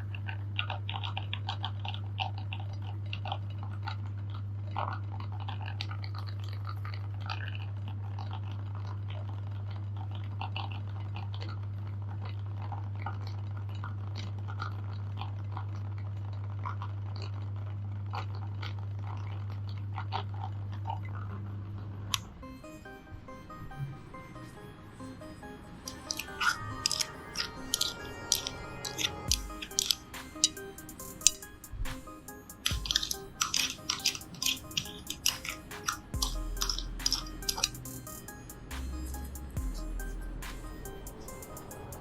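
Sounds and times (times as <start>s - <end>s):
chocolate crunching and cracking: 32.7s - 37.8s.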